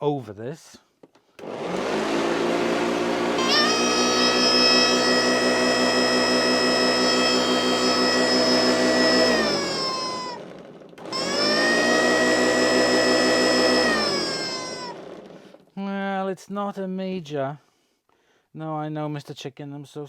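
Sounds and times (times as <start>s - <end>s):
vacuum cleaner whining: 1.4s - 15.6s.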